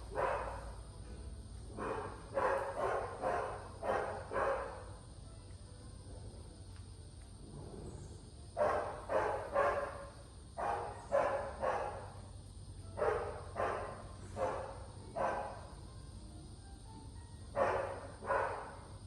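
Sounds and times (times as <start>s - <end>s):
dog barking: 0.1s - 0.7s, 1.8s - 4.9s, 8.6s - 12.1s, 13.0s - 15.6s, 17.6s - 18.8s.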